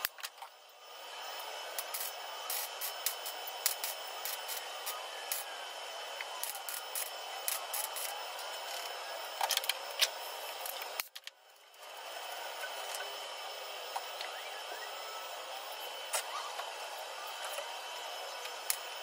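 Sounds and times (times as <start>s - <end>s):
welding arc crackling and popping: 1.7s - 5.6s, 6.2s - 11.8s, 18.4s - 19.0s.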